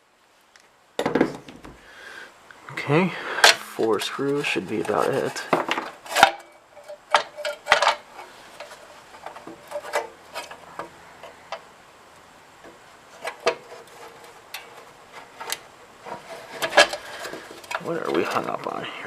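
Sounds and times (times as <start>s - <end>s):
faint rubbing: 2.7s - 11.5s, 12.7s - 19.0s.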